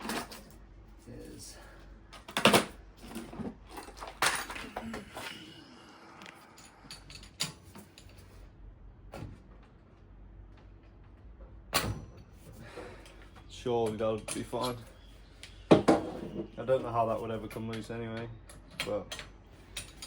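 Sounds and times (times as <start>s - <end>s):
metal tools knocking and clinking: 0.0s - 0.6s, 2.3s - 4.9s, 6.6s - 8.2s, 13.8s - 15.0s, 17.5s - 20.0s.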